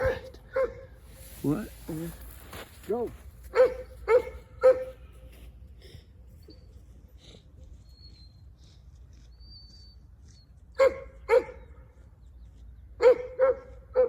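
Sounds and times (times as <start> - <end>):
dog barking: 0.0 - 1.0, 3.4 - 5.1, 10.8 - 11.7, 13.0 - 14.0.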